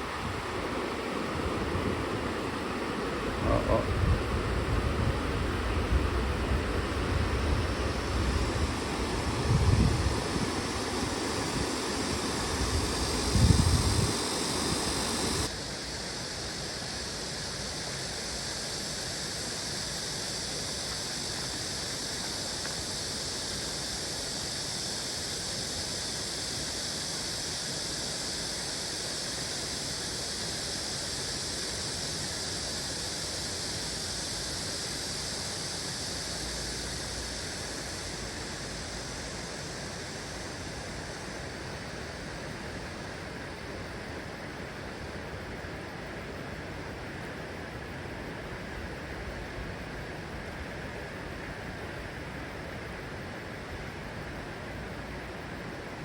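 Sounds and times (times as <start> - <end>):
stream water flowing: 0.0 - 15.5.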